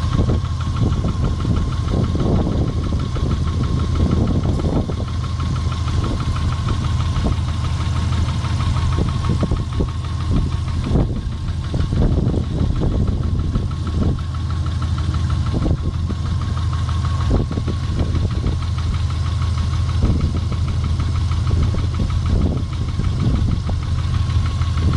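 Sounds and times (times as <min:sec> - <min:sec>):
car engine idling with a knock: 0:00.0 - 0:24.9.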